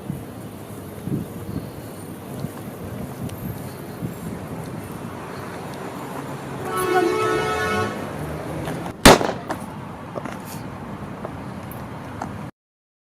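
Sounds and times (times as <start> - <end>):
street background noise: 0.0 - 12.5
vehicle horn toot: 6.6 - 8.0
sharp loud bang: 9.0 - 9.6.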